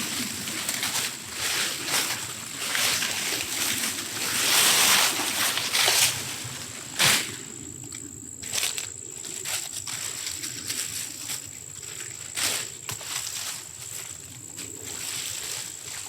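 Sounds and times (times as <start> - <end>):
leaves and vines rustling in straw: 0.0 - 16.0.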